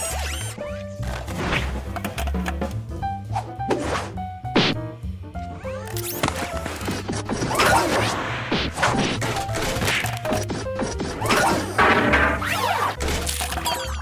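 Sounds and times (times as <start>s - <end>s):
cartoon crash and whack effects: 7.4s - 9.2s, 11.2s - 13.2s.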